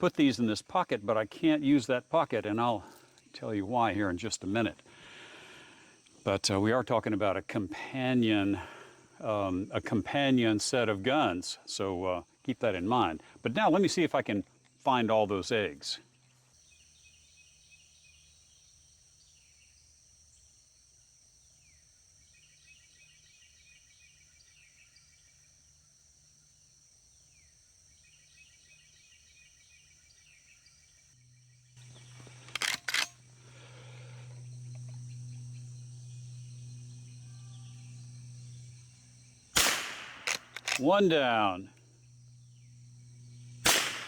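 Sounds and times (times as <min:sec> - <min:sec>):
insect hiss: 0:00.0 - 0:44.0
low steady hum: 0:31.1 - 0:44.0
sharp cracks: 0:32.2 - 0:33.2, 0:39.5 - 0:41.5, 0:43.5 - 0:44.0.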